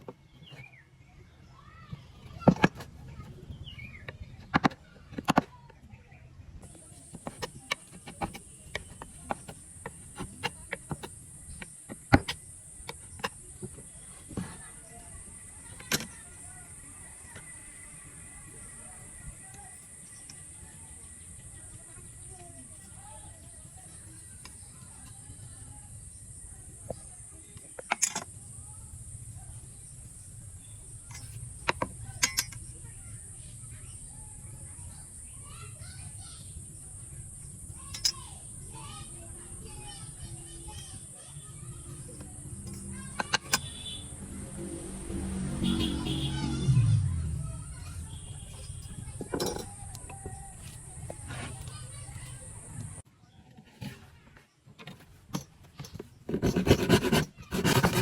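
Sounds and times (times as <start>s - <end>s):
sharp clicks and knocks: 2.3s - 3.0s, 7.0s - 14.7s, 26.9s - 28.3s, 42.0s - 44.0s, 48.4s - 53.0s, 54.8s - 58.0s.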